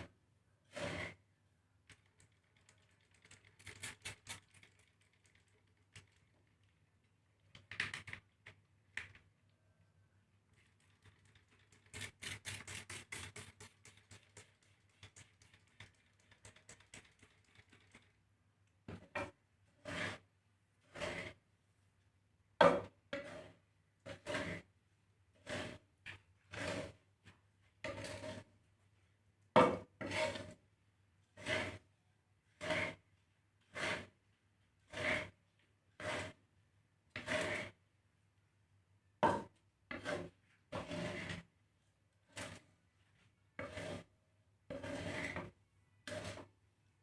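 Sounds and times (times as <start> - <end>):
spatula scraping seeds in pan: 0.0 - 1.2, 11.1 - 18.1, 19.2 - 21.4, 23.1 - 24.7, 25.3 - 27.0, 27.8 - 28.5, 29.6 - 30.6, 31.2 - 31.9, 32.5 - 36.4, 37.1 - 37.8, 39.9 - 41.5, 42.2 - 46.6.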